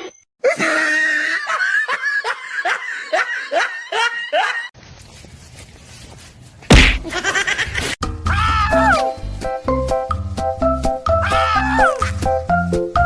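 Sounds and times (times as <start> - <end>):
person laughing: 6.7 - 8.0.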